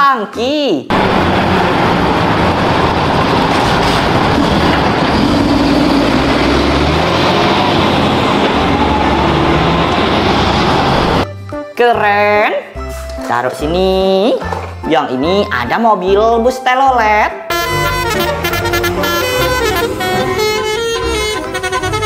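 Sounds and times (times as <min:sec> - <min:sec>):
heavy vehicle engine roar: 0:00.9 - 0:11.3, 0:17.5 - 0:22.0.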